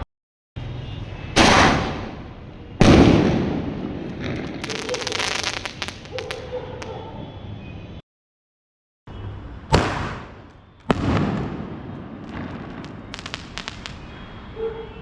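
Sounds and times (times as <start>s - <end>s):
firework bangs: 1.4s - 6.5s, 9.7s - 14.6s
firework crackling pops: 2.8s - 6.5s, 9.7s - 14.2s.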